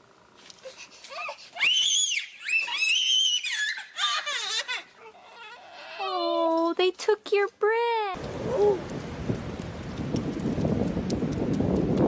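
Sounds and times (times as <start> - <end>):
small child squealing and laughing: 0.6 - 6.2.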